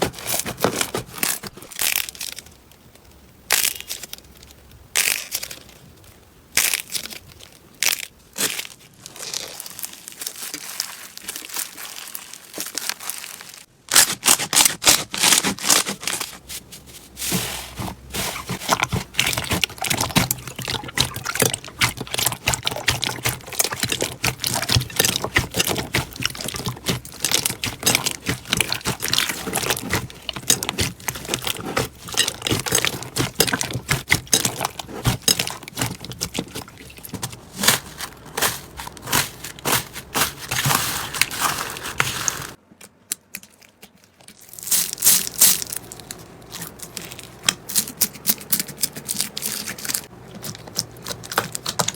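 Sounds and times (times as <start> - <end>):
slime squeezed crackling: 7.7 - 15.8, 17.2 - 42.6.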